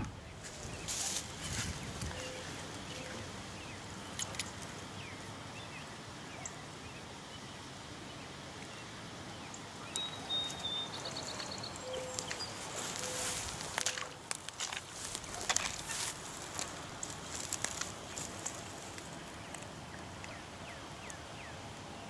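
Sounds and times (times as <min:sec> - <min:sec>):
outdoor background hiss: 0:00.0 - 0:22.0
bird chirps: 0:00.2 - 0:04.3, 0:08.7 - 0:14.2
rapid bird trill: 0:09.5 - 0:14.2.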